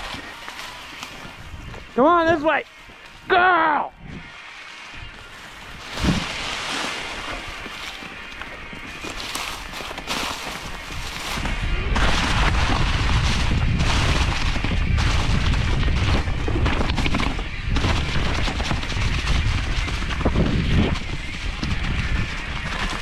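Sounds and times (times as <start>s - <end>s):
wind buffeting microphone: 1.1s - 3.3s, 3.9s - 23.0s
bike knocks and rattles: 5.1s - 23.0s.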